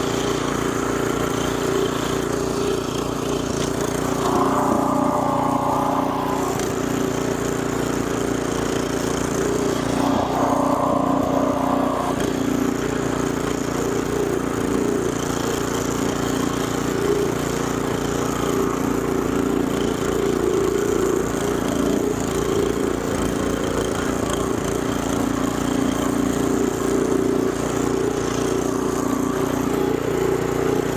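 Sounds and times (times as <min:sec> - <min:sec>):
snow blower engine running: 0:00.0 - 0:30.9
high whine: 0:04.1 - 0:06.6.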